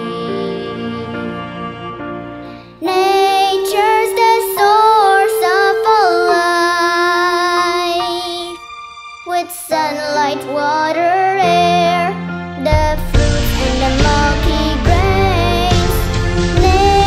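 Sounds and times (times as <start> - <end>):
instrumental accompaniment: 0.0 - 17.0
child singing loudly: 2.8 - 8.6.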